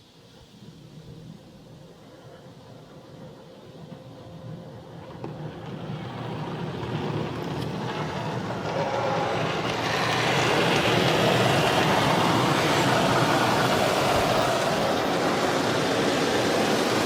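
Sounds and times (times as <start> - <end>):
car wash spraying water: 9.8 - 17.0.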